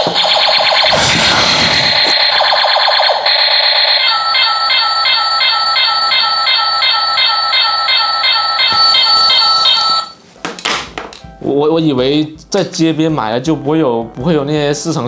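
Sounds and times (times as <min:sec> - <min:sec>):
toy electronic beeping pattern: 0:00.0 - 0:01.0.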